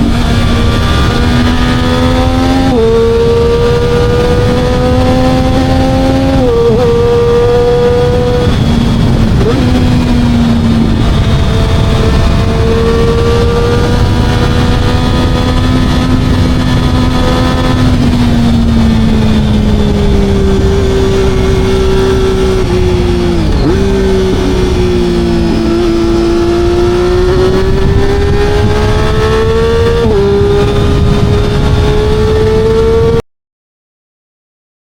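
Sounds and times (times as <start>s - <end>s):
motorcycle engine running: 0.0s - 33.2s.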